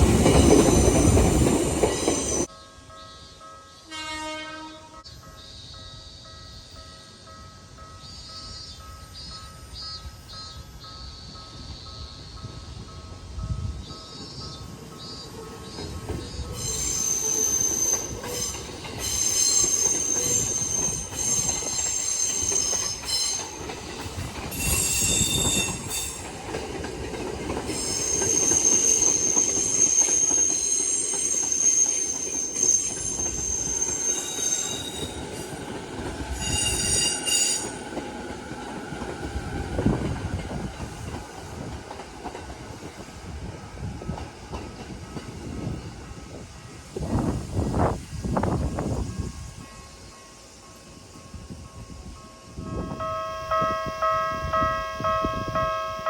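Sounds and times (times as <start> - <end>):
train wheels rumbling on rails: 0.0 - 2.5, 7.5 - 56.0
train wheels squealing: 0.0 - 3.2, 8.0 - 38.0.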